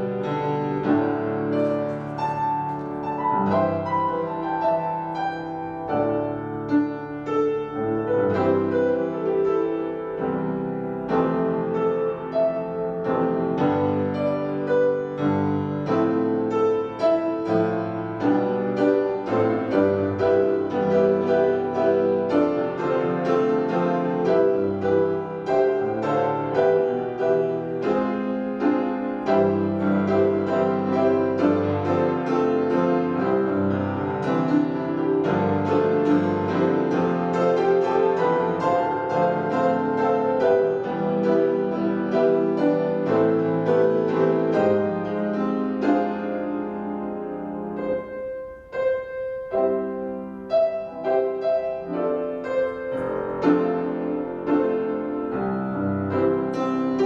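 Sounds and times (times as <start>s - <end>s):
solo piano piece: 0.0s - 57.0s.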